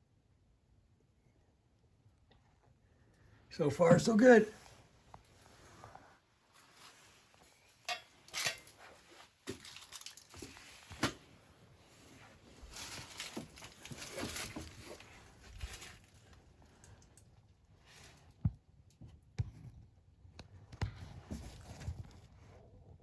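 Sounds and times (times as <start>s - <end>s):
soft rustling: 3.7s - 17.2s.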